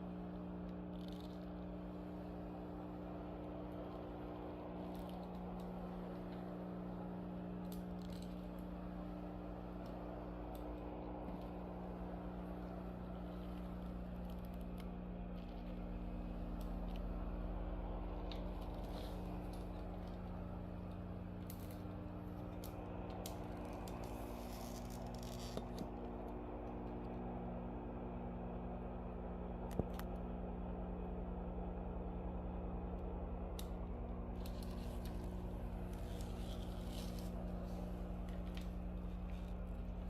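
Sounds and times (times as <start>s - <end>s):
steam mop humming: 0.0s - 26.2s, 34.3s - 40.0s
low rumble: 0.0s - 40.0s.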